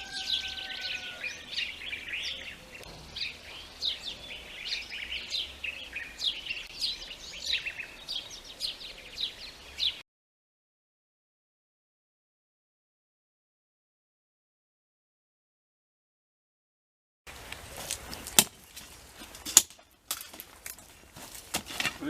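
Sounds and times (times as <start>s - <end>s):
small birds chirping: 0.0s - 10.0s, 17.3s - 22.0s.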